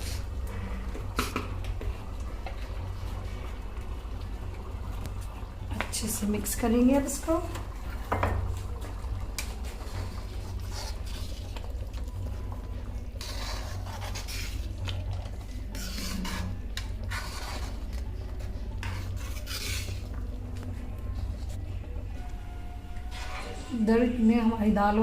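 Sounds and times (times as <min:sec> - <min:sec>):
low steady hum: 0:00.0 - 0:25.0
spoon scraping a cooking pot: 0:13.1 - 0:20.2.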